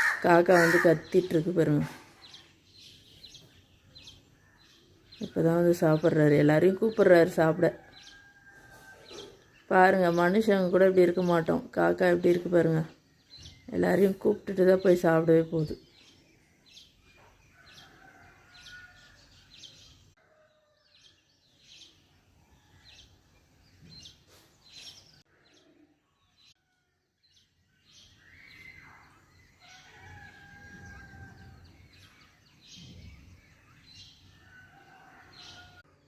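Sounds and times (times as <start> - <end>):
drawn-out bird calls: 0.0 - 1.4
faint bird chirps: 23.8 - 34.6.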